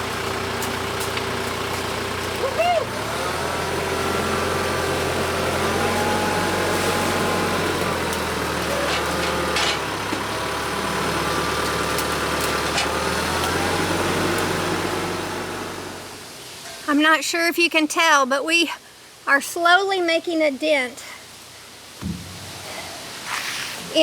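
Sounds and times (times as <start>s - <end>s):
tractor diesel engine under load: 0.0s - 16.4s.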